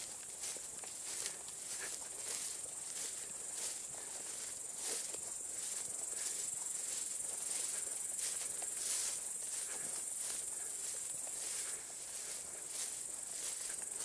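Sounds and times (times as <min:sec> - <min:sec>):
footsteps brushing through grass: 0:00.0 - 0:14.0
insects chirring: 0:00.0 - 0:14.0.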